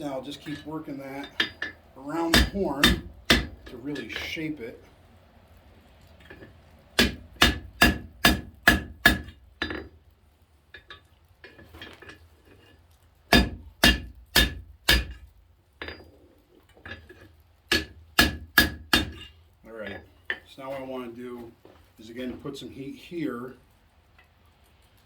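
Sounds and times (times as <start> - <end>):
hammer blows on hot steel: 0.0 - 4.4, 7.0 - 9.8, 13.3 - 15.3, 17.7 - 19.3.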